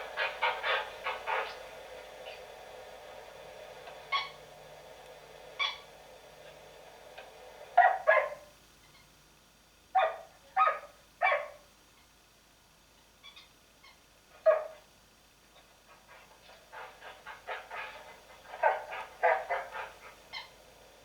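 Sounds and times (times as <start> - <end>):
dog barking: 7.8 - 8.5, 9.9 - 11.6, 14.4 - 14.8, 17.7 - 20.5.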